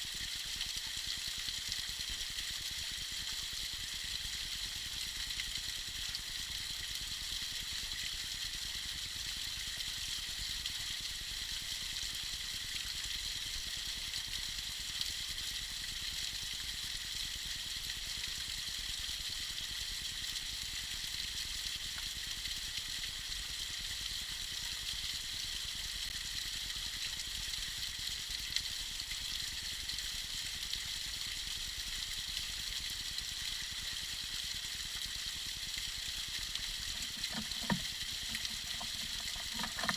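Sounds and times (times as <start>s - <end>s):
small waterfall splashing: 0.0s - 39.9s.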